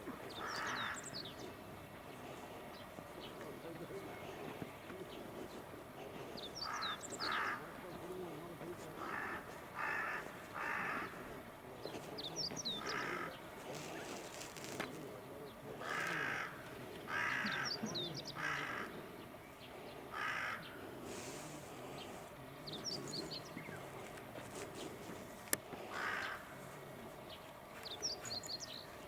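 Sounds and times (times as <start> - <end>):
crow cawing: 0.1 - 1.6, 6.0 - 11.5, 12.8 - 14.7, 15.7 - 19.2, 20.0 - 21.5, 25.7 - 26.7.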